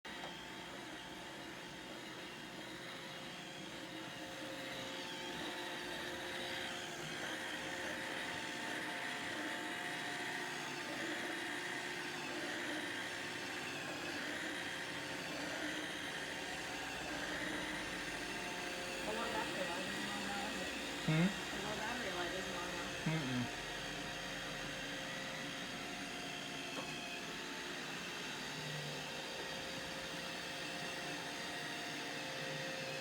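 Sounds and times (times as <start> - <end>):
robot vacuum whirring: 0.1 - 32.9
robot vacuum held tones: 21.0 - 21.5, 23.0 - 23.5.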